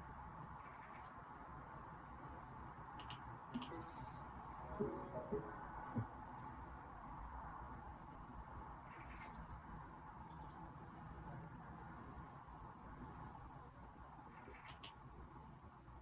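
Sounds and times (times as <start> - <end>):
birds chirping: 3.4 - 6.8.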